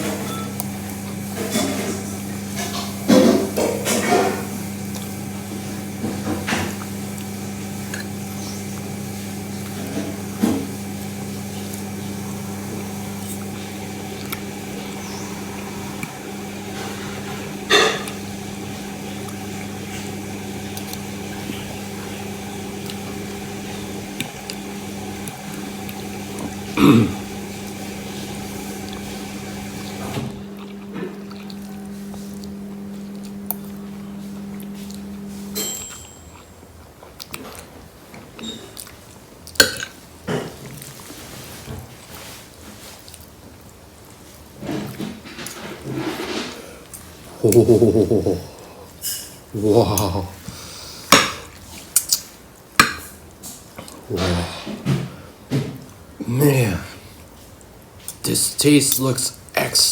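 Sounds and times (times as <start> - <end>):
low electrical hum: 0.0 - 59.9.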